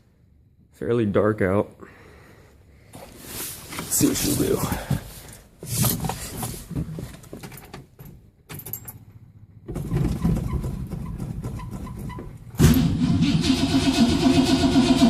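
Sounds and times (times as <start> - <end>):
engine starter cranking: 9.7 - 15.0.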